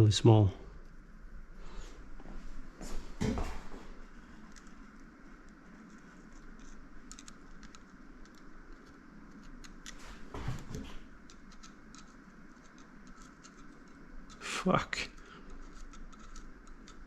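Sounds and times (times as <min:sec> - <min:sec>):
small parts clicking and tapping: 0:04.4 - 0:10.0, 0:11.0 - 0:17.0.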